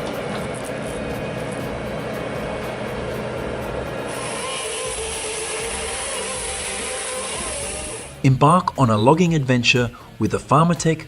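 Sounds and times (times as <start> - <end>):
wood-processing machinery running: 0.0 - 8.3.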